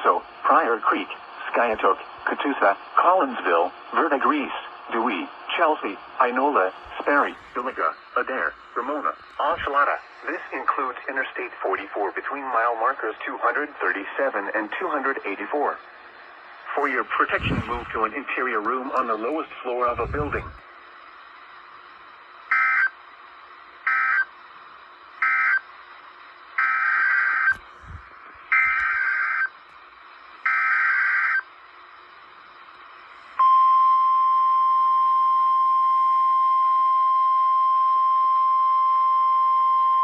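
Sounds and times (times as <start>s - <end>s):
faint radio hiss: 0.0s - 25.1s, 27.4s - 30.6s
steady alarm tone: 4.0s - 38.1s.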